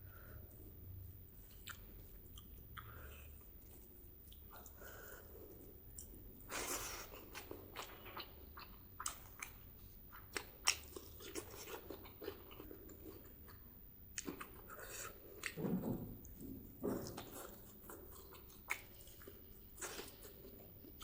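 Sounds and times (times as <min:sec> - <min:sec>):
close chewing and biting: 0:01.4 - 0:21.0
wet mouth clicks and crunches: 0:17.1 - 0:21.0.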